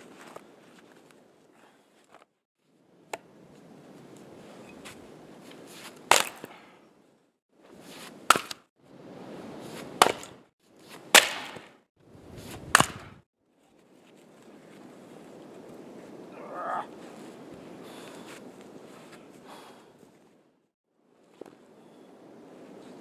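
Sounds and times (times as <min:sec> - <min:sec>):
firewood splitting strikes: 0:06.0 - 0:06.7, 0:08.2 - 0:08.7, 0:09.9 - 0:10.4, 0:11.1 - 0:11.8, 0:12.4 - 0:13.2.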